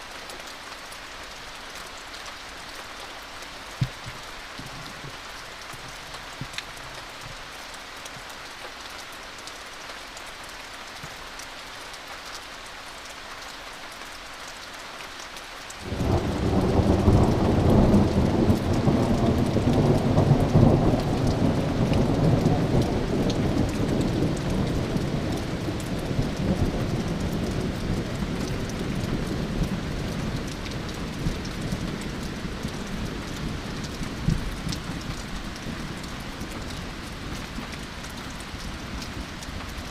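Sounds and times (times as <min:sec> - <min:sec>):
steady rain falling: 0:00.0 - 0:39.9
rolling thunder: 0:15.8 - 0:35.3.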